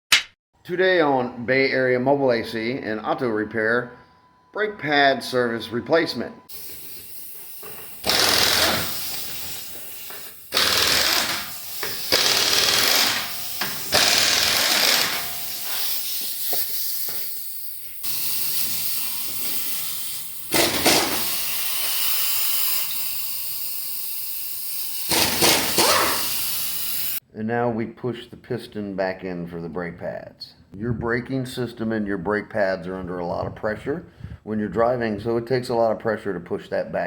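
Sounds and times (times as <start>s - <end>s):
pneumatic impact wrench rattling: 6.5s - 27.2s.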